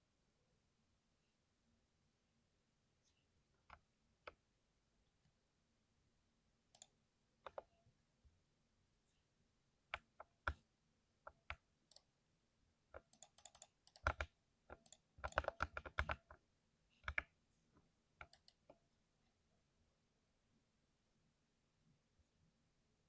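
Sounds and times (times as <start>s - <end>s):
mechanical keyboard typing: 13.0s - 16.4s.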